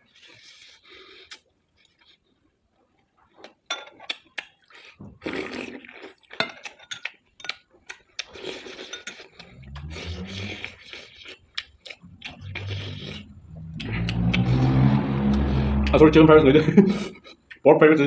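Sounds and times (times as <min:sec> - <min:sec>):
metal spoon scraping a plate: 0:08.6 - 0:11.2
low hum: 0:09.4 - 0:10.8, 0:11.8 - 0:17.2.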